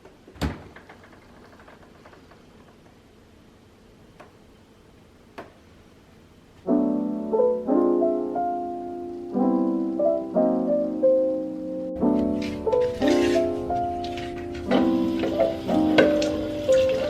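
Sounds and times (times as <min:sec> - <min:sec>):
lo-fi piano music: 0:06.6 - 0:17.0.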